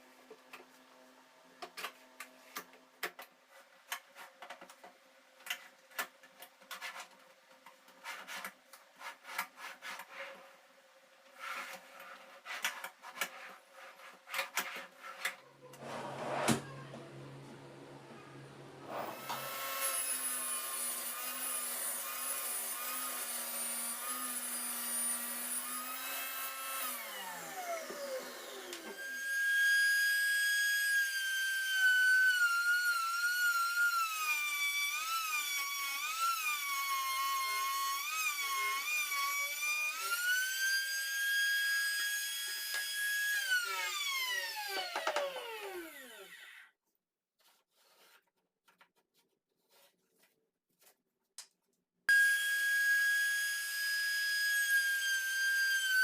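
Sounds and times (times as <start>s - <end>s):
electric saw cutting wood: 15.8s - 46.7s, 52.1s - 56.0s.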